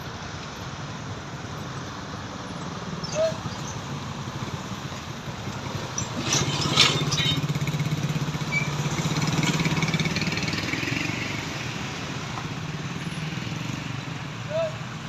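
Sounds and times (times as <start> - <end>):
vehicle engine passing by: 3.2 - 14.7.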